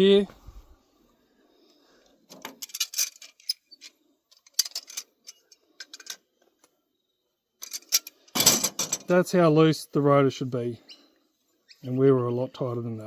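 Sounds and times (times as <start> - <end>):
metallic clicks and knocks: 2.3 - 6.2.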